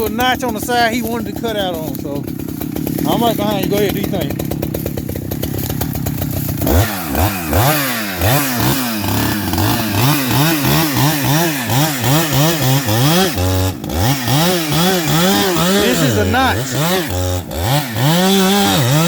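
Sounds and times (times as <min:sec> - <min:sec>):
chainsaw cutting tree trunk: 0:00.0 - 0:19.0.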